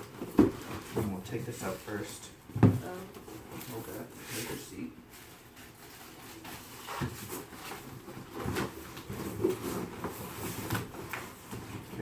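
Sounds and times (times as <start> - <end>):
packaging rustling: 3.4 - 12.0.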